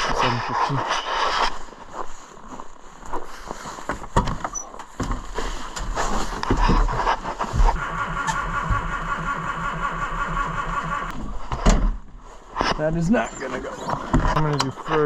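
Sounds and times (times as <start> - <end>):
knocks clicks and scrapes: 3.8 - 8.9, 10.4 - 15.0.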